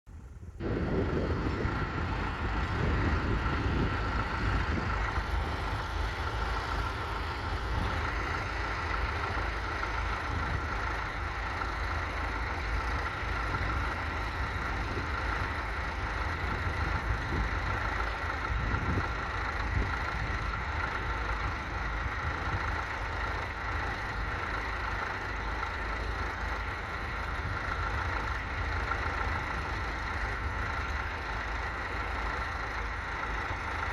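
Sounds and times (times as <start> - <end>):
tractor engine running: 0.1 - 33.9.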